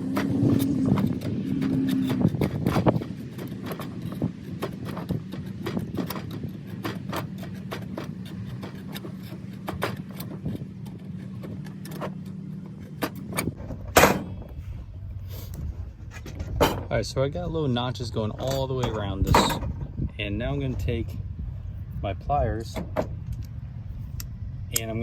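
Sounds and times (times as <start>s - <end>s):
metallic clank: 0.0s - 14.6s, 16.0s - 17.0s, 18.3s - 20.0s
steady low hum: 0.0s - 25.0s.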